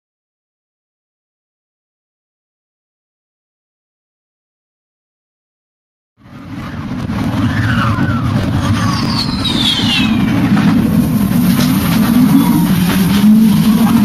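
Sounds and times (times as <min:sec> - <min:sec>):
loud low rumble: 0:06.2 - 0:14.0
falling whistle: 0:07.4 - 0:10.6.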